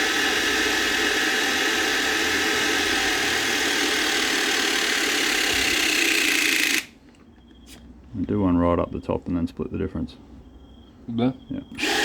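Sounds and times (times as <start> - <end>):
power tool motor running: 0.0 - 6.9, 11.8 - 12.0.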